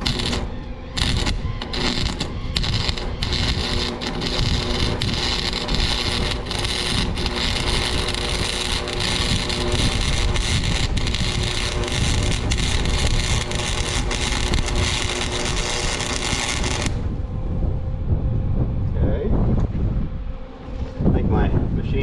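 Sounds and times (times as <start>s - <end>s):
welder arc crackling and sizzling: 0.0s - 17.1s.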